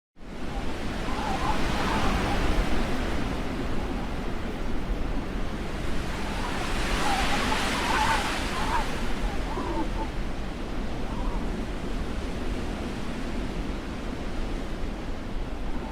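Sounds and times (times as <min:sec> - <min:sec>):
faint wavering wind whistles: 0:00.2 - 0:15.9
blizzard wind rushing: 0:00.3 - 0:15.9.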